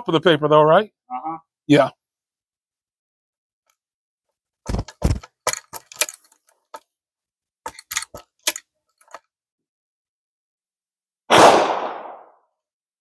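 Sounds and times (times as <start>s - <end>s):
metallic clicks and knocks of a rifle: 4.7s - 6.9s, 7.7s - 9.3s.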